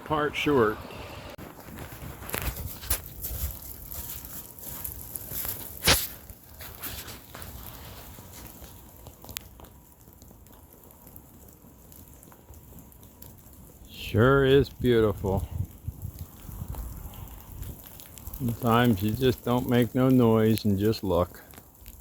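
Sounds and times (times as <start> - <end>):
footsteps crunching in snow: 1.4 - 8.6.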